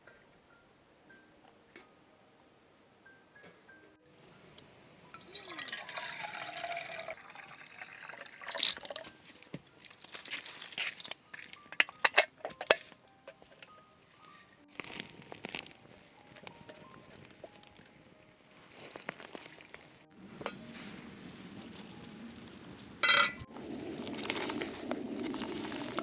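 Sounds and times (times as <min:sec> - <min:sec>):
liquid pouring: 0:05.2 - 0:09.2, 0:23.3 - 0:26.0.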